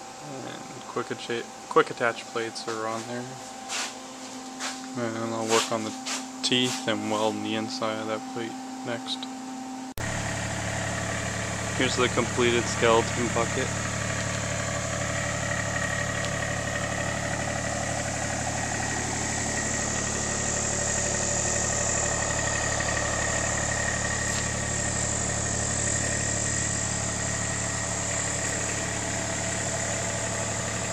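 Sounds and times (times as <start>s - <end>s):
excavator diesel engine idling: 10.0s - 30.9s.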